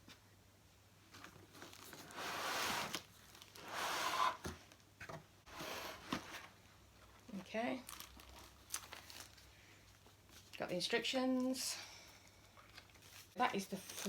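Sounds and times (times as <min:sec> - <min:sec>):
packaging rustling and tearing: 0:01.2 - 0:03.7, 0:07.8 - 0:09.5, 0:12.7 - 0:14.0.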